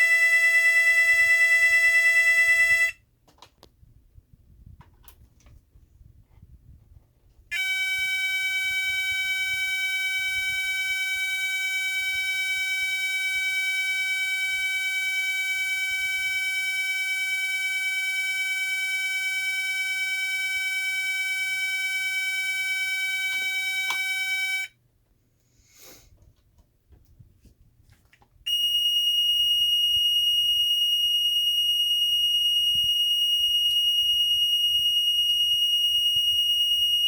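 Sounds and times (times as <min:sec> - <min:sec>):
steady electronic alarm tone: 0:00.0 - 0:03.0, 0:07.5 - 0:24.7, 0:28.5 - 0:37.0.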